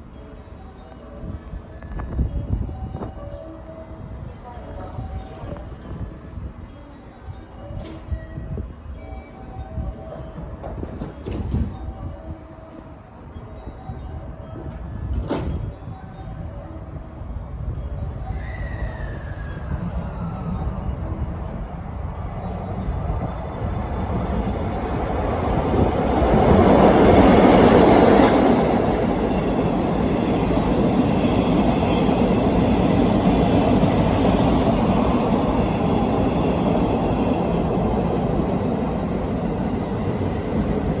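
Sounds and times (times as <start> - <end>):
freight train rumbling past: 14.0 - 41.0
train wheels on rails: 18.4 - 41.0.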